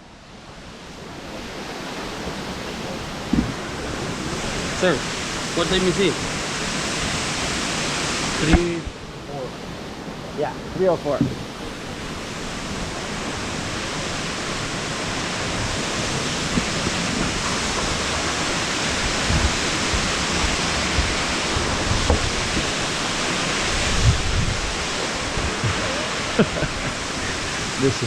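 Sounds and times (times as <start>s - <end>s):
waterfall roaring: 0.0s - 28.0s
soft low thumps: 3.3s - 3.7s, 11.2s - 11.5s, 19.1s - 22.8s.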